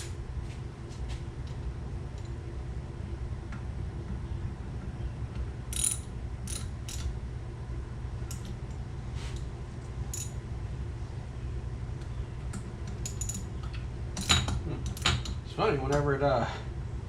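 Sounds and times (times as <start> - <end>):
steady low hum: 0.0 - 17.0
metal tools and bolts clinking: 5.7 - 7.1, 10.1 - 10.4, 12.9 - 13.6, 14.2 - 15.4.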